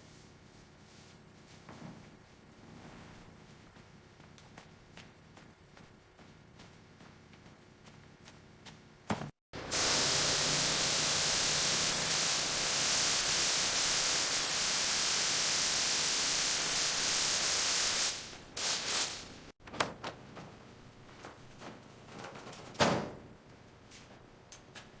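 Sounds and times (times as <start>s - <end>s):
air spraying hiss: 9.6s - 19.5s.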